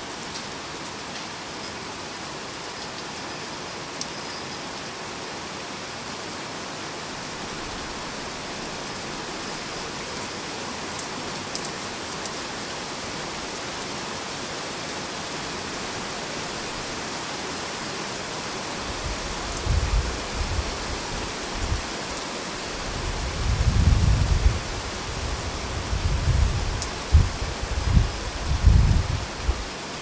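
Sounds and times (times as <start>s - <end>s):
heavy rain falling: 0.0s - 30.0s
faint drip ticks: 9.4s - 12.4s.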